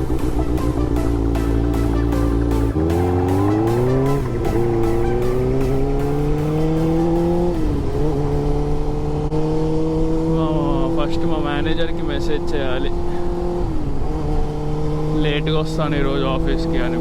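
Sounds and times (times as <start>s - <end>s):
motorcycle engine accelerating: 0.0s - 17.0s.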